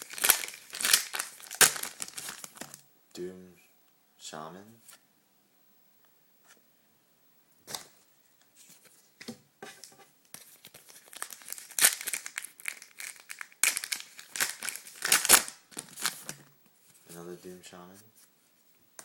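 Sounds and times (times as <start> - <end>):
foil wrapper tearing and crinkling: 0.0 - 2.8, 10.4 - 16.4.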